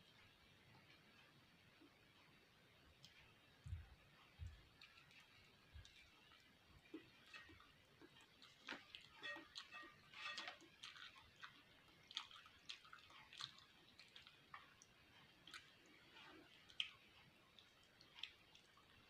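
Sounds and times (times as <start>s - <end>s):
wet chewing and lip-smacking: 3.0s - 19.0s.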